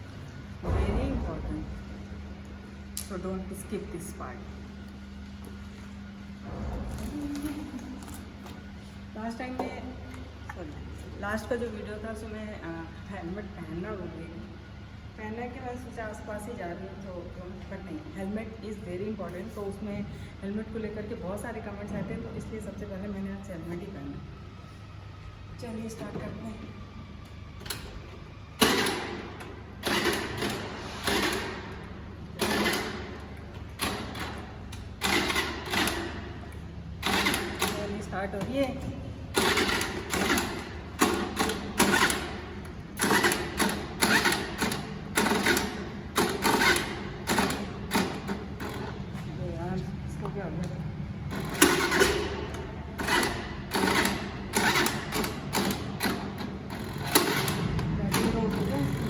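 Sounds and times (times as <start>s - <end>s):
scooter starter cranking: 35.0s - 36.2s, 37.0s - 38.0s, 39.3s - 42.4s, 43.0s - 48.8s, 51.3s - 59.0s.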